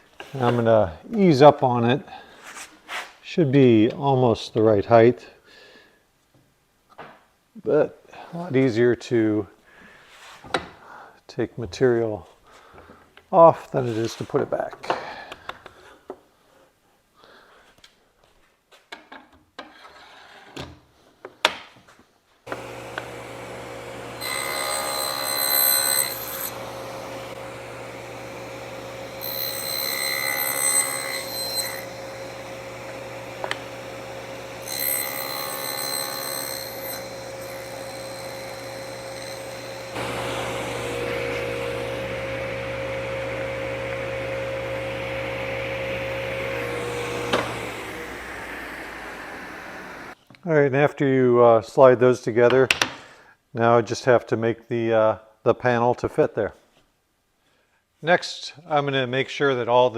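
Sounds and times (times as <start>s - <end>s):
saw blade whining while cutting: 22.5s - 50.2s
table saw running: 22.5s - 50.2s.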